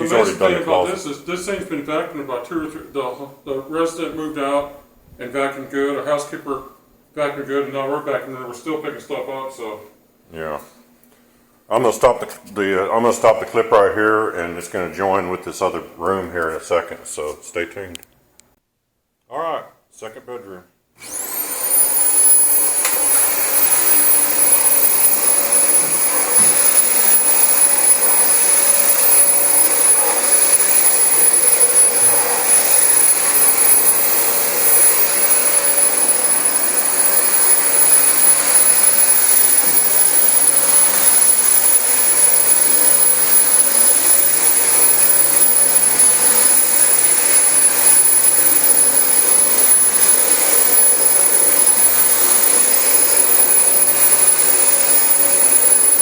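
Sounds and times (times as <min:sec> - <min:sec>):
vacuum cleaner running: 0:21.0 - 0:56.0.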